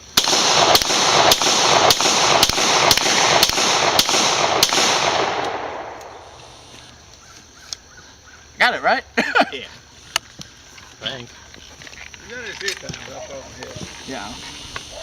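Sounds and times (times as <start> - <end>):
gunshots: 0.0 - 6.4
hiss: 13.7 - 15.0.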